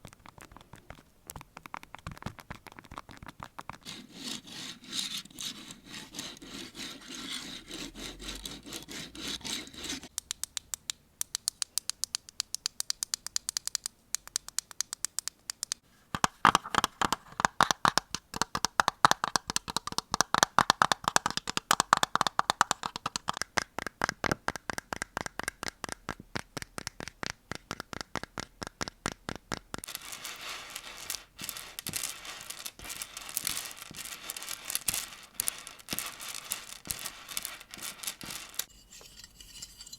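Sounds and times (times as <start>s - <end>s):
close scratching: 1.7s - 10.1s, 29.8s - 39.9s.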